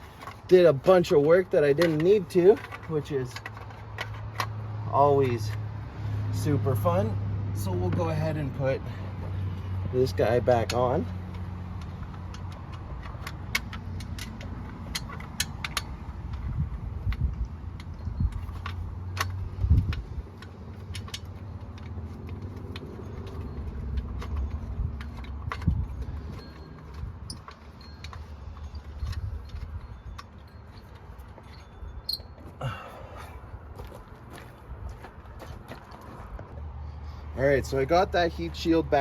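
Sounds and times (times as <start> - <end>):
metal clinks and taps: 9.2 - 32.6.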